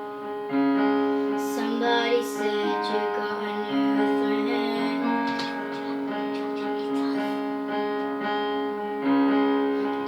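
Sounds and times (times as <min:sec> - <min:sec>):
piano chords: 0:00.0 - 0:10.0
person singing: 0:01.4 - 0:07.5.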